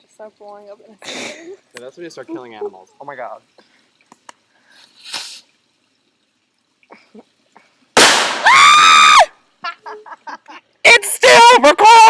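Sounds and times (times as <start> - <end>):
firework hiss: 4.7 - 5.5
firework burst: 8.0 - 8.5.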